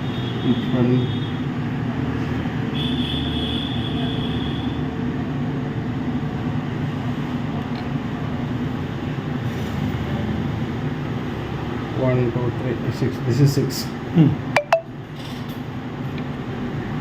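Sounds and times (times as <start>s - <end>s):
faint high tone: 14.6s - 14.9s.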